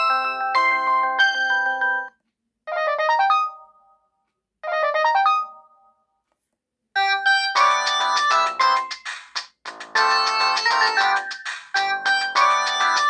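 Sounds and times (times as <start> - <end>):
mobile phone ringtone melodies: 0.0 - 2.1, 7.0 - 9.0, 9.9 - 13.0.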